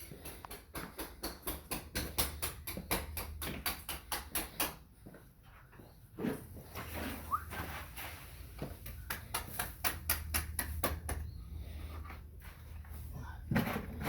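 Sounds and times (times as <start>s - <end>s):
hammer and chisel tapping: 0.0s - 4.8s, 8.8s - 11.3s.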